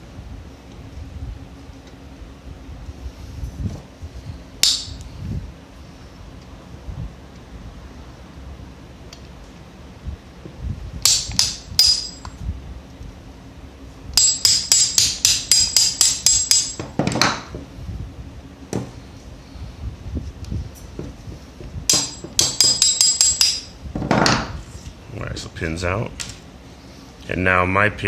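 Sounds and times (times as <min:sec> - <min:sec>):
hammer tapping metal punch: 0:04.6 - 0:05.0, 0:11.0 - 0:12.4, 0:14.2 - 0:17.4, 0:21.9 - 0:24.4.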